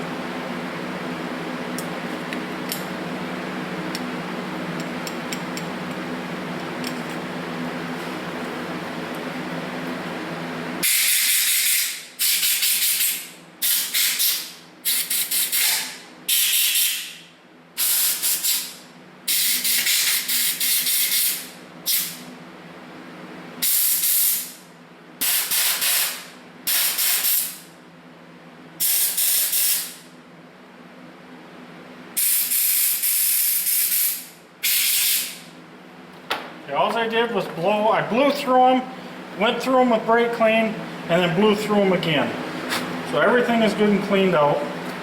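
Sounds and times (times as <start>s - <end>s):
compressed air hissing bursts: 10.8s - 17.2s, 17.8s - 22.2s, 23.6s - 24.6s, 25.2s - 27.6s, 28.8s - 30.0s, 32.2s - 35.5s.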